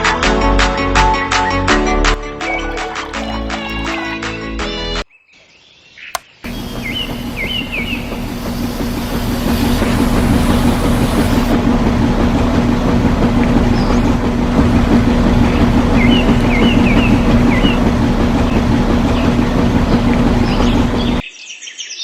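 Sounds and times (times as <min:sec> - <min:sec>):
small motor humming: 0:02.4 - 0:04.2, 0:06.4 - 0:11.6
birds chirping: 0:02.4 - 0:04.3, 0:05.1 - 0:11.6, 0:15.5 - 0:21.4.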